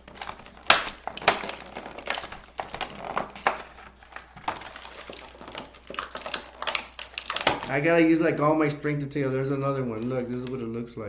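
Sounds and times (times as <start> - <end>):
sharp plastic snaps: 0.0 - 7.9
plastic packaging crinkling: 0.0 - 10.8.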